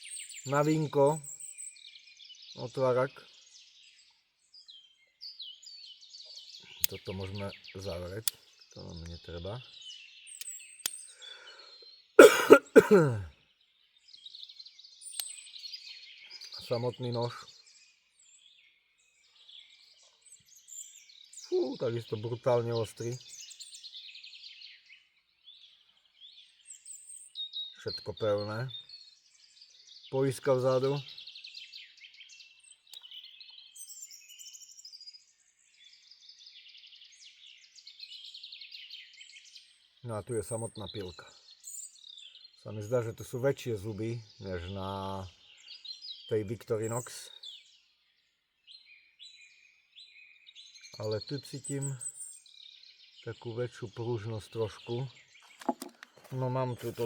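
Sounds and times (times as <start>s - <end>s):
faint bird chirps: 0.0s - 57.0s
man coughing: 12.2s - 13.3s.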